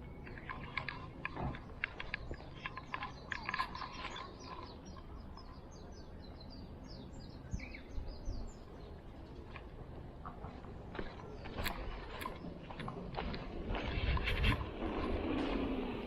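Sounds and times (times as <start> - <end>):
small bird chirping: 0.0 - 9.6
low outdoor rumble: 0.0 - 16.0
sharp clicks and rustles: 0.1 - 5.5.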